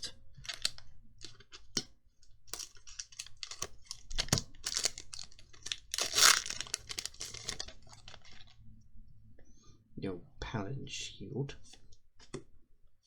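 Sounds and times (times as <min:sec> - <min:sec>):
cards rustling: 0:02.6 - 0:08.5.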